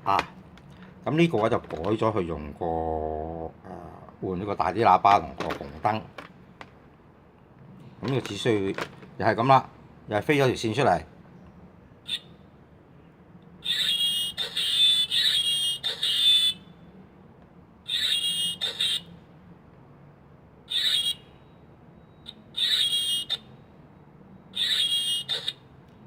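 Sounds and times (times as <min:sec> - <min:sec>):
electronic toy chirping: 0:12.0 - 0:12.4, 0:13.6 - 0:16.7, 0:17.8 - 0:19.1, 0:20.6 - 0:23.5, 0:24.5 - 0:25.7.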